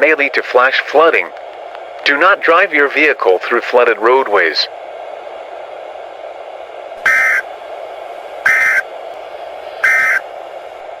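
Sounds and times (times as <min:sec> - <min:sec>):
radio static: 0:02.1 - 0:04.7, 0:07.0 - 0:07.5, 0:08.4 - 0:08.9, 0:09.6 - 0:10.3
buzzy digital data bursts: 0:07.0 - 0:07.5, 0:08.4 - 0:08.8, 0:09.8 - 0:10.2.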